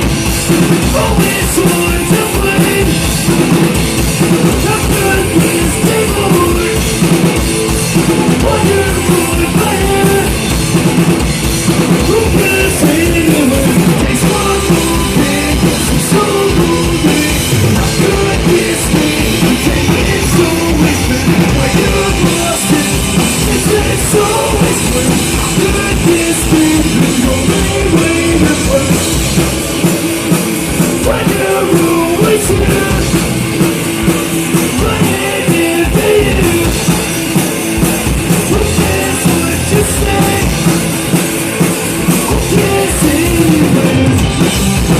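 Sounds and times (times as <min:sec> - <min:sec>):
drum kit: 0:00.0 - 0:44.9
live rock band: 0:00.0 - 0:44.9
person singing: 0:00.8 - 0:03.1, 0:04.5 - 0:06.9, 0:08.3 - 0:10.4, 0:12.0 - 0:29.4, 0:30.9 - 0:33.3, 0:34.5 - 0:37.1, 0:38.3 - 0:40.7, 0:42.0 - 0:44.4.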